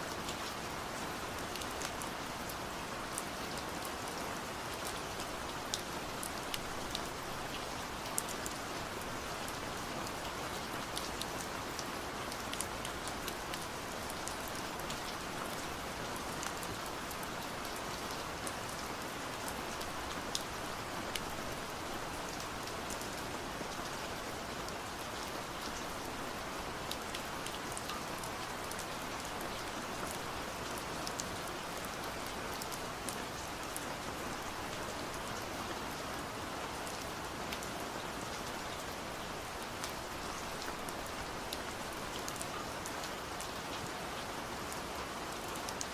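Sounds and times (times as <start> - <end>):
rain pattering on hard surface: 0.1 - 45.9.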